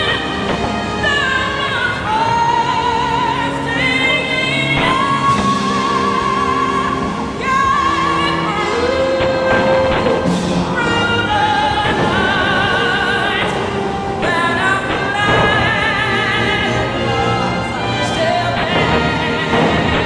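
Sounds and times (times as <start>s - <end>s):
operatic singing with music: 0.0s - 20.0s.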